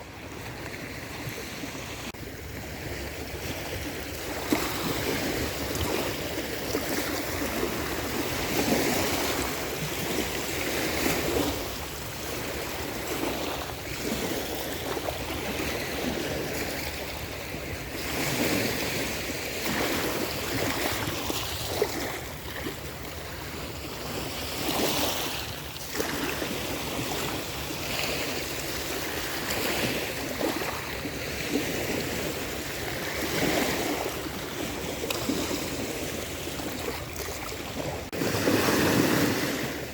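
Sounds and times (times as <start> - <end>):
surf breaking on beach: 35.0 - 39.9.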